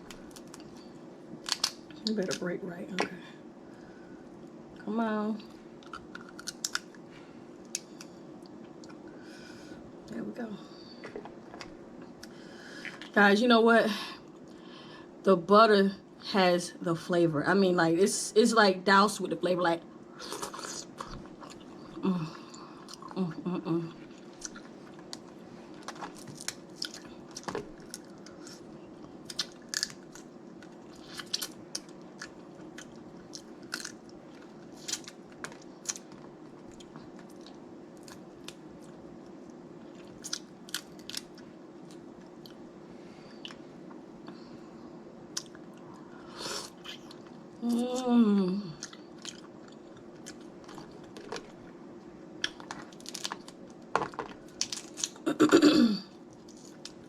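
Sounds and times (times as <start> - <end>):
chewing crab legs with shell crunches: 0.1 - 2.0, 5.8 - 7.0, 24.0 - 42.6, 48.8 - 51.8, 52.4 - 55.2
person humming: 22.0 - 22.5, 23.2 - 24.0, 47.6 - 48.8.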